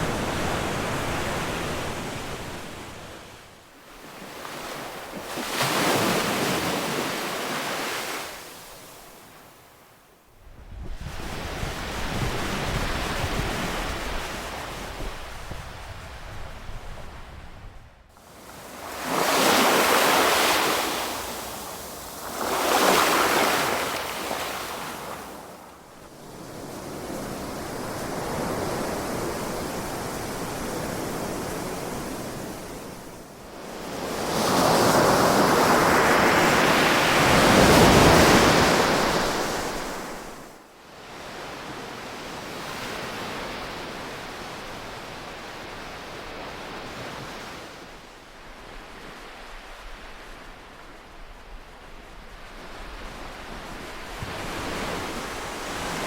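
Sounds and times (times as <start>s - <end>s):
ocean waves breaking: 0.0s - 9.2s, 18.2s - 25.6s, 26.2s - 40.6s.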